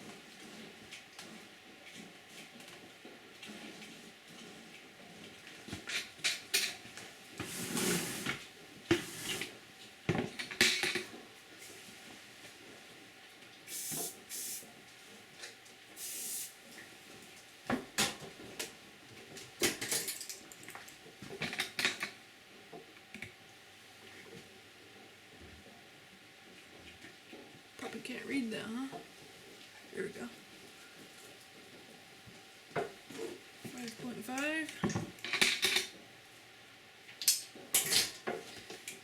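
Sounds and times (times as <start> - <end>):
short hissing bursts: 13.7 - 14.6, 16.0 - 16.6.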